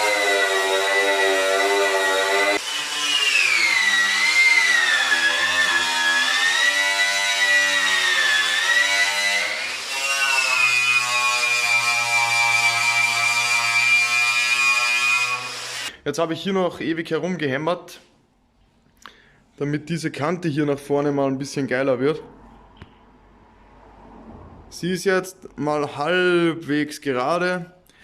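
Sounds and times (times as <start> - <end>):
power tool whining: 0.0 - 15.9.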